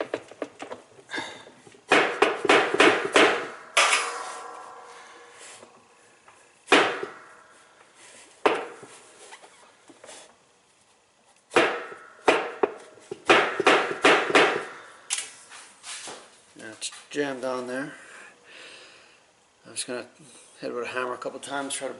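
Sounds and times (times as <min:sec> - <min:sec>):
sharp knocks on metal plate: 0:01.9 - 0:05.4, 0:06.7 - 0:07.3, 0:11.5 - 0:14.8.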